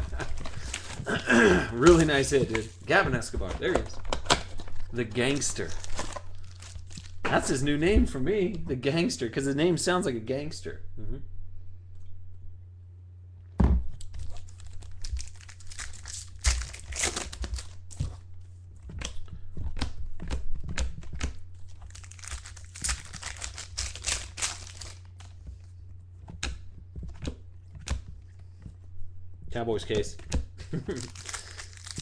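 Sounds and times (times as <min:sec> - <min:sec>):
card wrappers crinkling and tearing: 0:00.0 - 0:07.8, 0:14.0 - 0:18.3, 0:20.8 - 0:25.7, 0:30.7 - 0:32.0
low electrical hum: 0:00.0 - 0:32.0.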